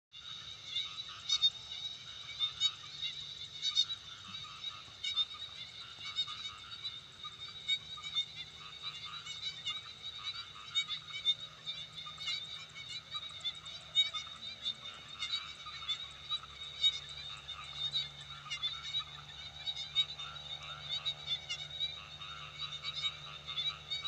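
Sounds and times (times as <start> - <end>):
frogs calling: 0.2 - 24.0.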